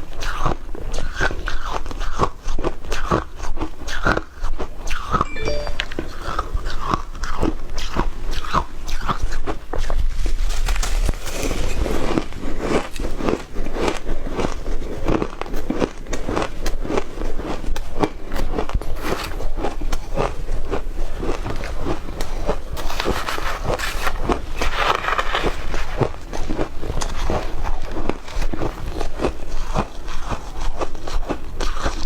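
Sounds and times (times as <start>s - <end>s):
crunching shaved ice: 11.6s - 32.0s.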